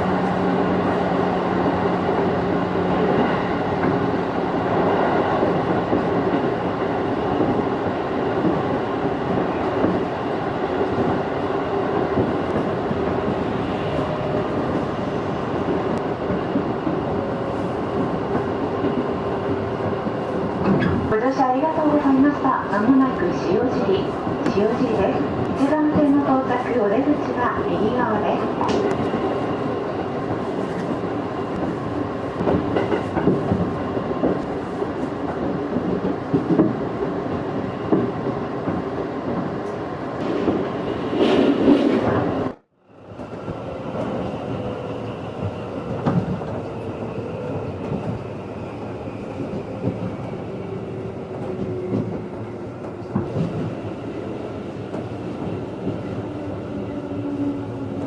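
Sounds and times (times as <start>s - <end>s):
train wheels rumbling on rails: 0.0s - 58.0s.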